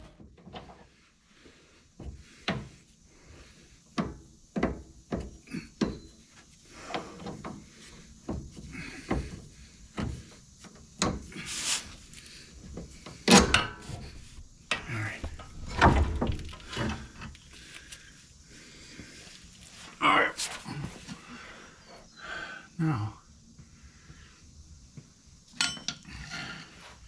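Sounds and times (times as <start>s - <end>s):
metal tools knocking and clanking: 25.6s - 26.0s.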